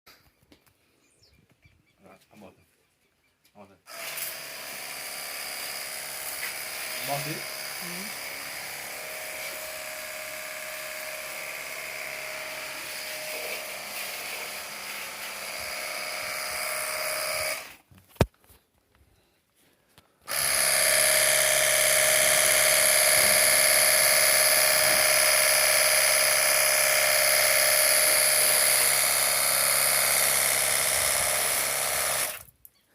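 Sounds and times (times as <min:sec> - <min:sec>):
pressure washer motor whine: 0:20.3 - 0:32.4.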